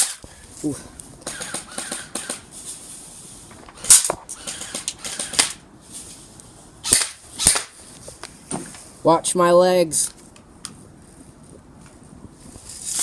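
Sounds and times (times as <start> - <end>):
airsoft gun shots: 1.2 - 2.5, 3.8 - 5.6, 6.8 - 7.8.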